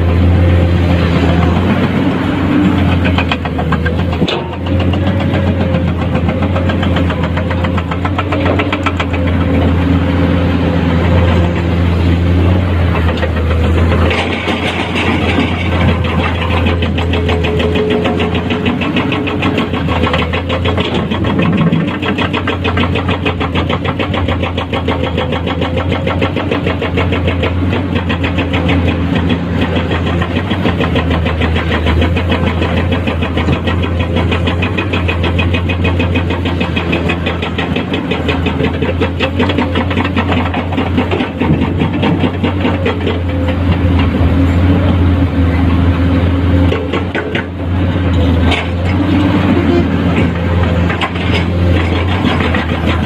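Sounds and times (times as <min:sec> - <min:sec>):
excavator diesel engine running: 0:00.0 - 0:53.0.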